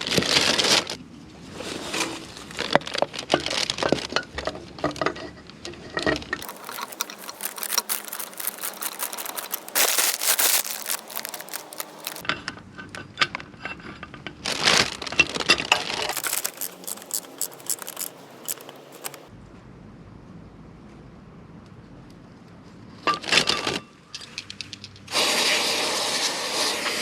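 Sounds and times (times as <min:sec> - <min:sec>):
rustling and crinkling: 0:00.0 - 0:12.3, 0:14.4 - 0:19.3.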